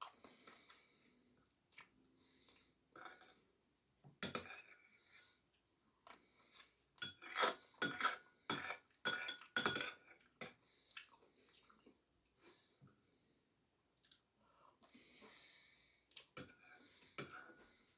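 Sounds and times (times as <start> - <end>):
cutlery clinking on a plate: 7.0 - 10.6.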